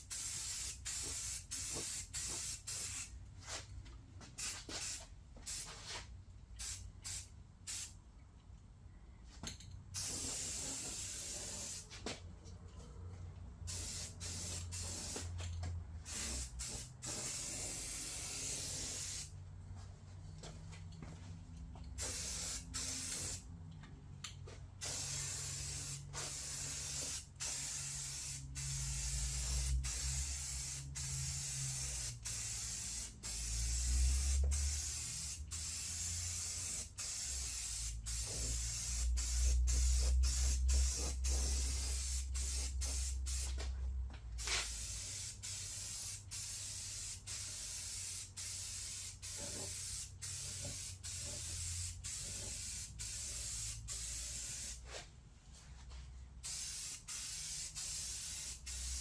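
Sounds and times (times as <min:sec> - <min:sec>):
paint spray hissing: 0:00.0 - 0:03.1, 0:04.4 - 0:05.9, 0:06.6 - 0:07.9, 0:10.0 - 0:11.9, 0:13.7 - 0:15.4, 0:16.0 - 0:19.3, 0:22.0 - 0:23.5, 0:24.8 - 0:43.6, 0:44.4 - 0:54.8, 0:56.4 - 0:59.0.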